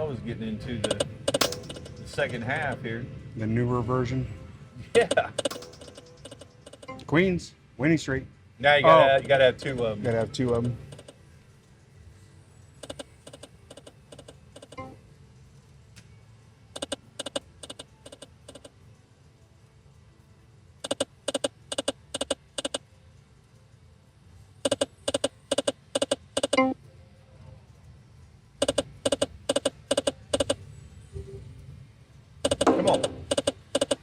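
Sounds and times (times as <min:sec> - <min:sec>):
slot machine reel-stop clicks: 0:00.8 - 0:02.8, 0:05.3 - 0:07.1, 0:24.7 - 0:26.7, 0:28.6 - 0:30.6, 0:32.5 - 0:34.0.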